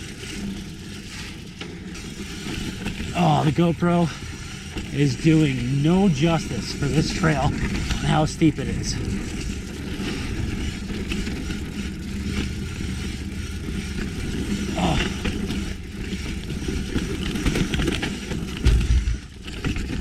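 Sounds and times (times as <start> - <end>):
bike rattling: 0.0 - 20.0
bike tyres clattering over ground: 0.0 - 20.0.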